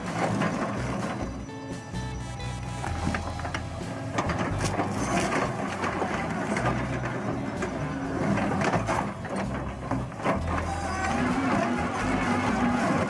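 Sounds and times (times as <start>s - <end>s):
machine engine humming: 0.0s - 13.0s.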